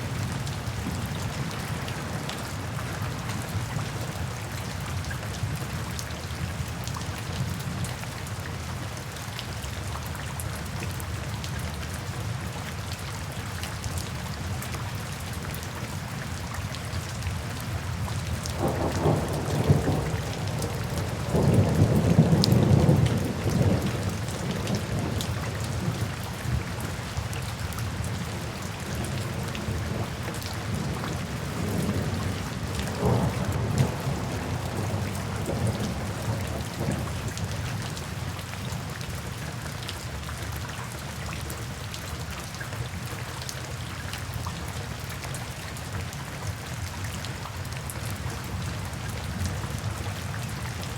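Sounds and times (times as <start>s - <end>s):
steady rain falling: 0.0s - 50.9s
thunder rumbling: 18.6s - 25.2s, 32.9s - 37.2s.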